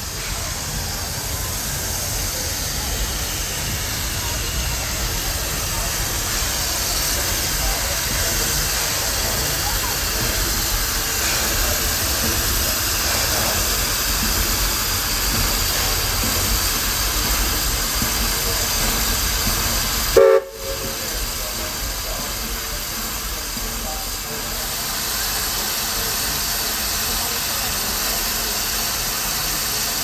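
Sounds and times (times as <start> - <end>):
steam locomotive hissing: 0.0 - 30.0
steam whistle note: 20.2 - 20.9.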